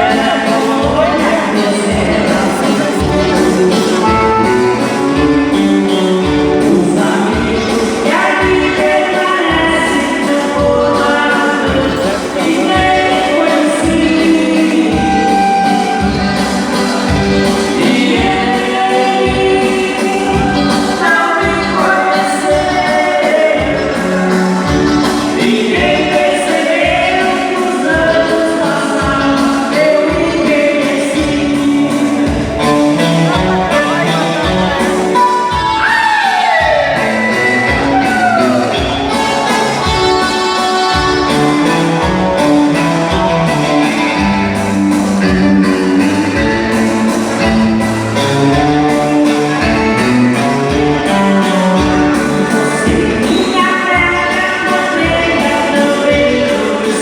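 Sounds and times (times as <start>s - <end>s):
dance music with singing: 0.0s - 4.4s
person singing: 0.0s - 47.6s, 48.2s - 57.0s
dance music with drum beat: 0.0s - 57.0s.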